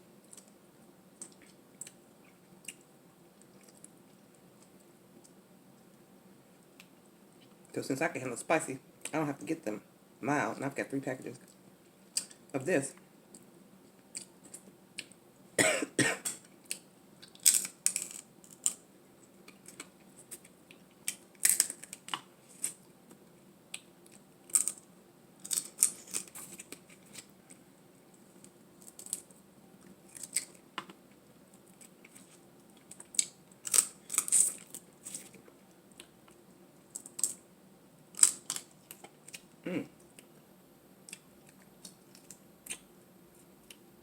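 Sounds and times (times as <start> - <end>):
chewing crackles and mouth clicks: 1.2 - 5.9, 13.3 - 15.2, 16.5 - 27.6, 28.4 - 37.4, 38.1 - 40.3.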